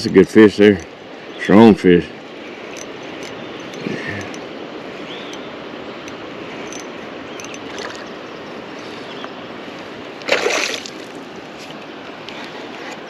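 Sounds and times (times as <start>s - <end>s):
water rushing around boat: 0.0s - 13.0s.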